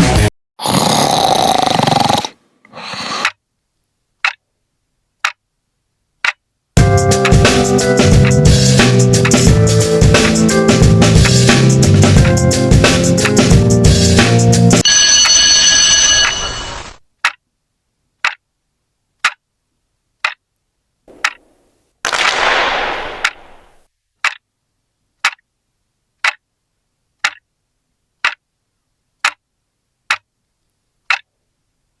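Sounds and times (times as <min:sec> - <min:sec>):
clock ticking: 0:04.2 - 0:04.4, 0:05.2 - 0:05.4, 0:06.2 - 0:11.5, 0:17.2 - 0:17.4, 0:18.2 - 0:18.4, 0:19.2 - 0:19.4, 0:20.2 - 0:20.4, 0:21.1 - 0:21.8, 0:24.2 - 0:24.4, 0:25.2 - 0:25.4, 0:26.2 - 0:26.4, 0:27.2 - 0:27.4.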